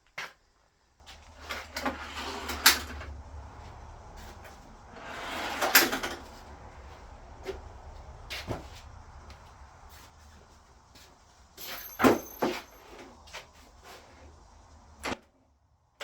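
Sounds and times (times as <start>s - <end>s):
wood and metal scraping: 1.0s - 6.6s, 11.6s - 14.2s.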